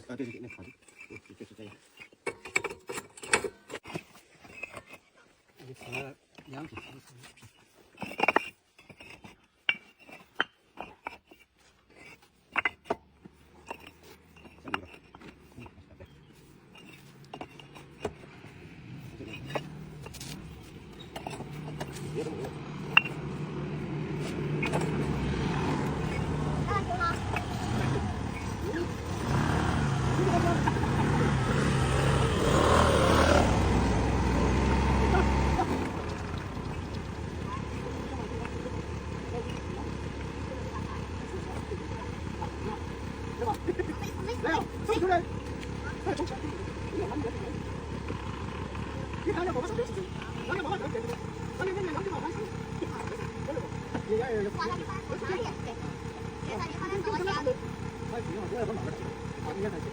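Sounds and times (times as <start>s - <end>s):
bricks knocking and scraping: 0.0s - 59.9s
motorcycle engine running: 17.4s - 59.9s.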